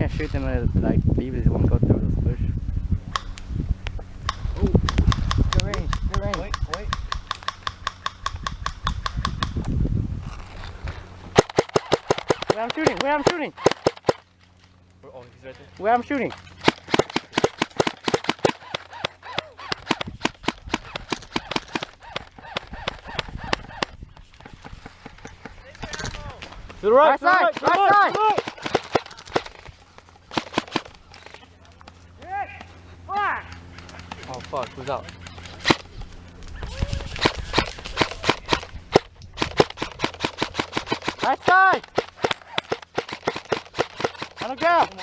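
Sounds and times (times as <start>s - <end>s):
airsoft guns firing: 11.4s - 14.3s, 15.8s - 23.9s, 27.2s - 31.4s, 34.4s - 36.0s, 37.1s - 45.0s.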